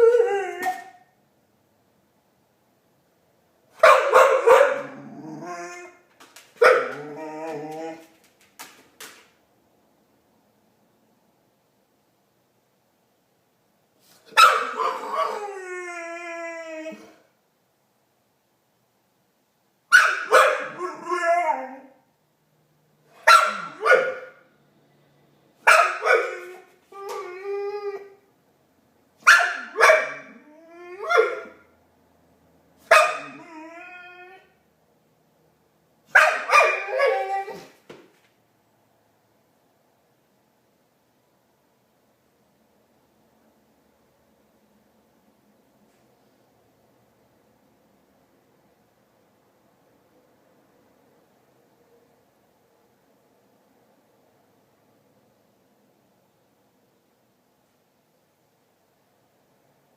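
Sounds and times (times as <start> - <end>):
dog barking: 3.8 - 5.1, 6.6 - 7.1, 14.3 - 15.4, 19.9 - 20.9, 23.2 - 24.4, 25.6 - 26.6, 29.2 - 30.4, 31.0 - 31.6, 32.8 - 33.4, 36.1 - 37.6
dog howling: 4.7 - 6.0, 6.8 - 8.1, 14.6 - 17.2, 20.5 - 22.0, 33.1 - 34.5, 36.4 - 37.7.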